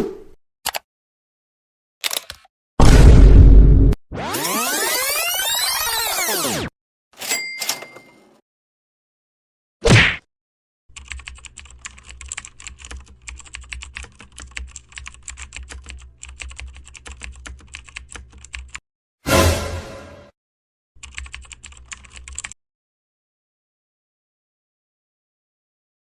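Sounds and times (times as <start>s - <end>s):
rapid keyboard typing: 10.9s - 18.8s, 21.0s - 22.6s.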